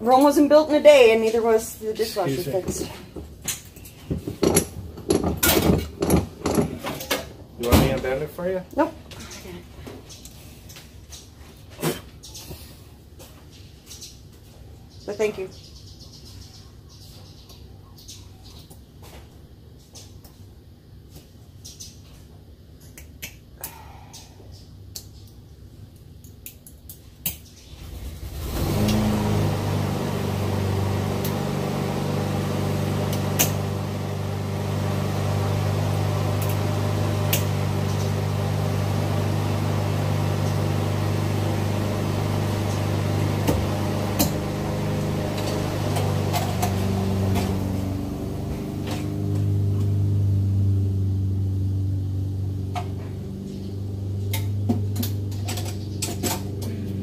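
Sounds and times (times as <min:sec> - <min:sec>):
electric motor humming: 0:28.4 - 0:57.0.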